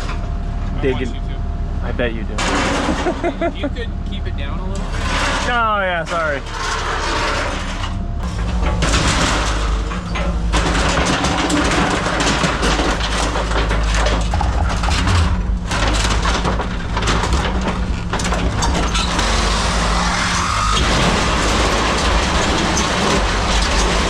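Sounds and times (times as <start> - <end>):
excavator diesel engine running: 0.0 - 24.0.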